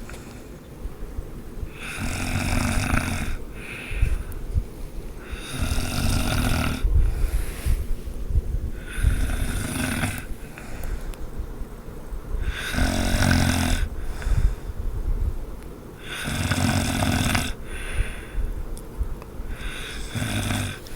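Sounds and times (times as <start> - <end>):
person snoring: 1.8 - 4.2, 5.2 - 7.8, 8.8 - 10.6, 12.4 - 14.4, 16.0 - 18.2, 19.5 - 20.9.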